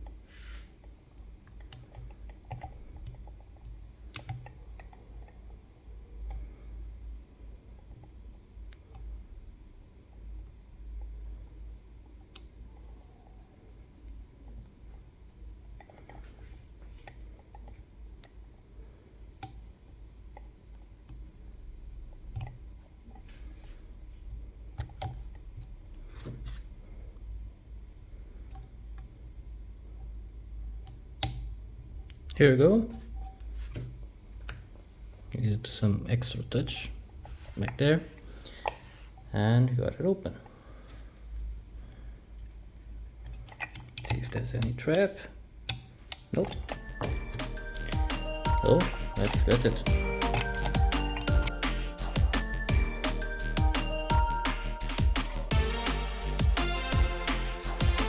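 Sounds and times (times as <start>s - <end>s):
faint steady hum: 0.0s - 58.0s
lock pick clicking and scraping: 42.4s - 48.0s, 49.1s - 51.6s.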